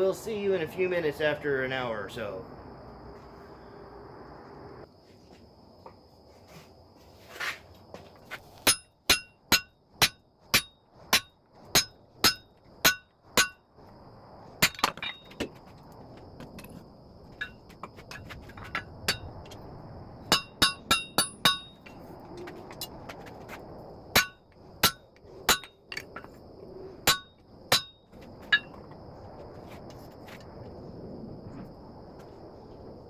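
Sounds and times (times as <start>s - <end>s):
hammer clanging on anvil: 27.1s - 28.0s.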